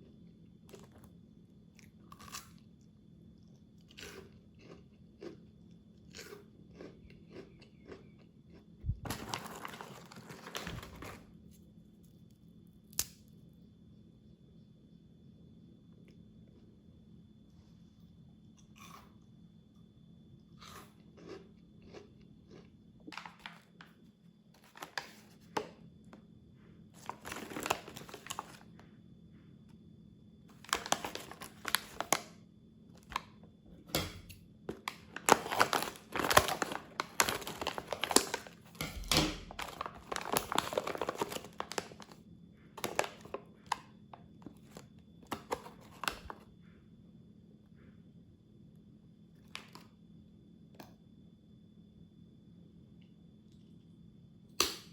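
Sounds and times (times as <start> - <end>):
plastic wrapper crinkling and tearing: 9.0 - 11.2, 24.6 - 25.4, 27.0 - 28.6, 30.5 - 32.3, 34.7 - 42.2, 42.8 - 43.8, 44.5 - 46.4.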